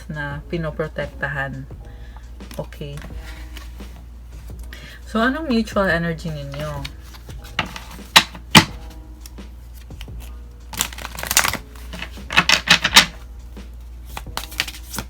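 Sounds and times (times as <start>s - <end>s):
cards rattling while shuffled: 2.4s - 4.7s, 6.3s - 15.0s
cards snapping: 6.4s - 15.0s.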